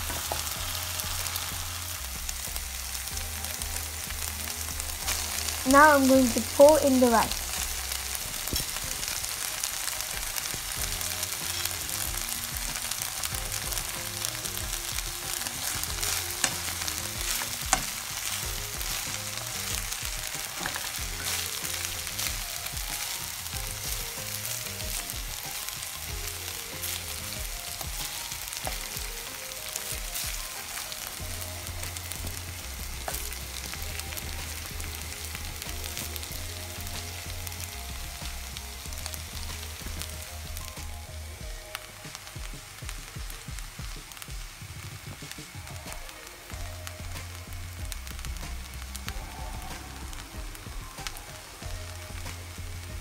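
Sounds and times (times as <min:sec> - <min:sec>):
rice sizzling in a frying pan: 0:00.0 - 0:53.0.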